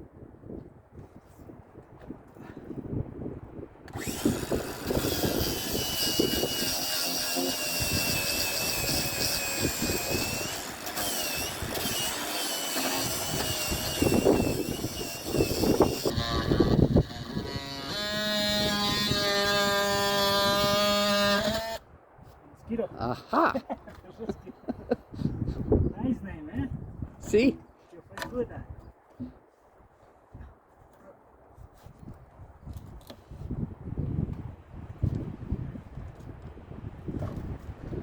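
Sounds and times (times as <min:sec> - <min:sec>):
power tool motor whining: 0:03.9 - 0:21.8.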